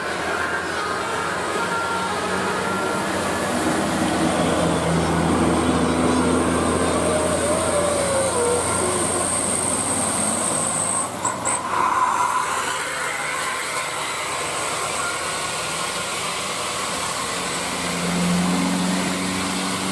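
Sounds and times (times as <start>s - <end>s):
bus engine noise: 0.0s - 19.9s.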